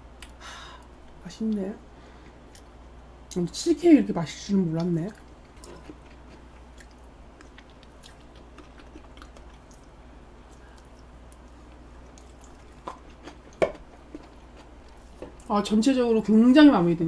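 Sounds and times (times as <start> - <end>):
wet chewing mouth sounds: 5.1 - 15.5.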